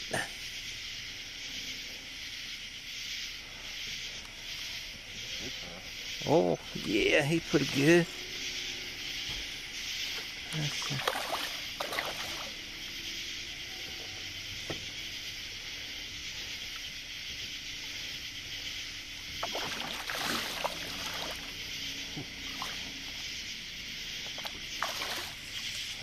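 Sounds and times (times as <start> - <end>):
night insects chorus: 0.0 - 26.0.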